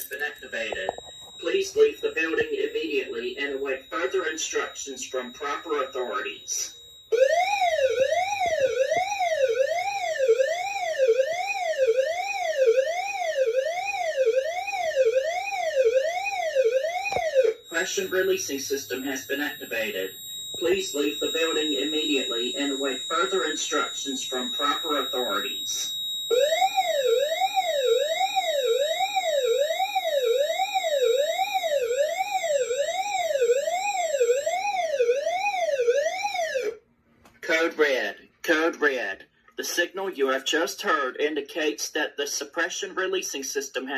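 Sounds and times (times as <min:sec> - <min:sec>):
recorded voice message: 0:00.0 - 0:06.8, 0:17.7 - 0:25.9, 0:37.4 - 0:43.9
faint steady high tone: 0:00.0 - 0:09.2, 0:17.1 - 0:28.2
siren tone sweeping up and down: 0:00.0 - 0:36.8.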